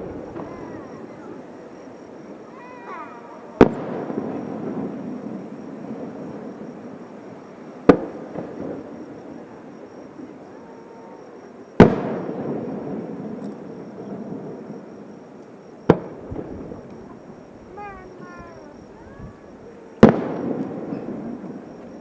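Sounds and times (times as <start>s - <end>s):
rolling rumble: 0.0s - 2.4s
firework shells bursting: 0.0s - 10.0s.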